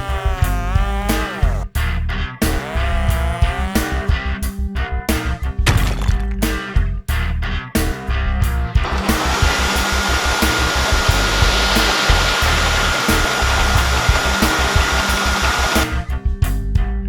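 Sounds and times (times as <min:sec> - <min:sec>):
background music with beat: 0:00.0 - 0:17.0
motorised rushing with whine: 0:08.8 - 0:16.0.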